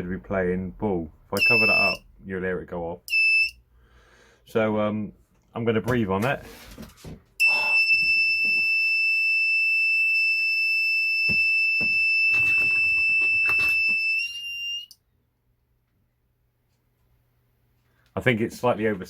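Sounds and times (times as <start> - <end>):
high-pitched alarm buzzer tone: 1.4 - 2.0, 7.4 - 14.9.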